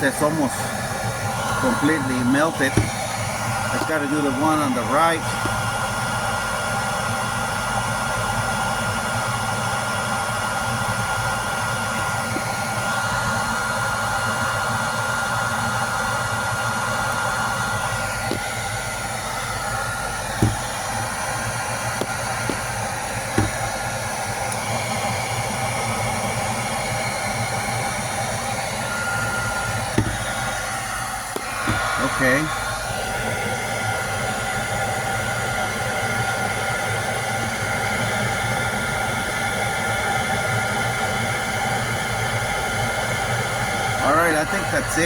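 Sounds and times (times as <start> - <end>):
thin whine: 0.0 - 6.2, 16.9 - 35.0
hair dryer blowing: 0.0 - 45.0
light knocks: 2.7 - 3.0, 20.4 - 20.8, 23.4 - 23.7, 30.0 - 30.3.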